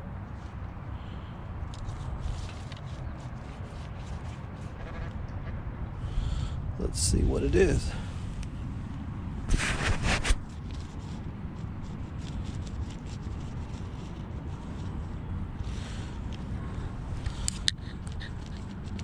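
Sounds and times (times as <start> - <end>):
wind rumble on microphone: 0.0 - 19.0
hand trowel scraping ground: 9.5 - 11.2
soil ticks: 17.2 - 19.0.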